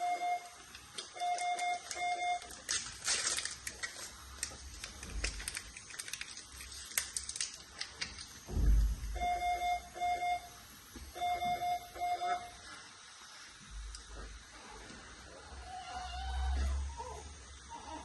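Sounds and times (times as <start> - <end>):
high-pitched alarm beeps: 0.0 - 0.5, 1.2 - 2.5, 9.0 - 12.6
dull thump: 8.5 - 9.2.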